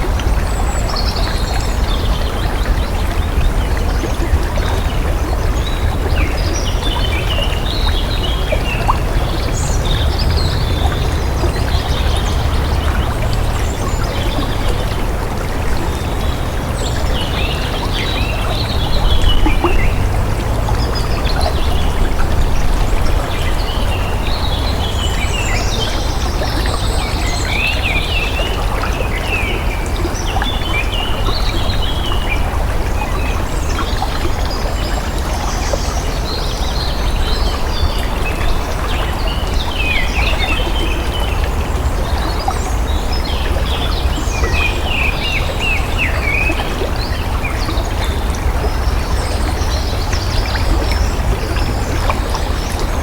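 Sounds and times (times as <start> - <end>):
flowing water: 0.0 - 53.0.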